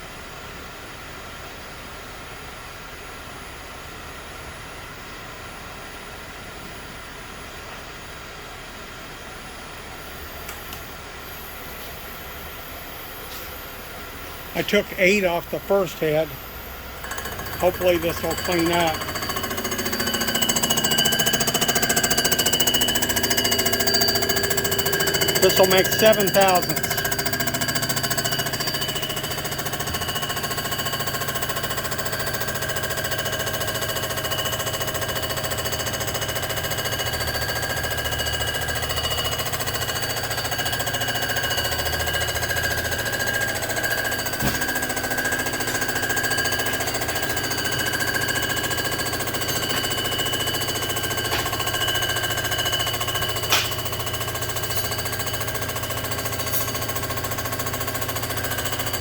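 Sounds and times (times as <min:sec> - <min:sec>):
surfacing machine milling metal: 0:17.0 - 0:59.0.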